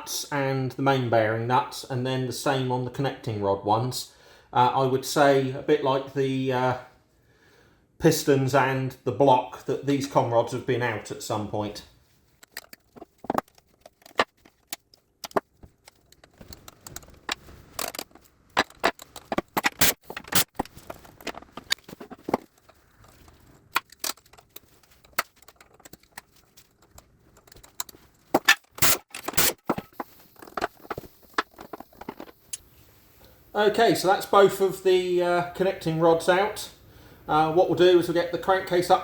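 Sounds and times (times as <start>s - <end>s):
metal tools clinking and scraping: 12.4s - 32.5s.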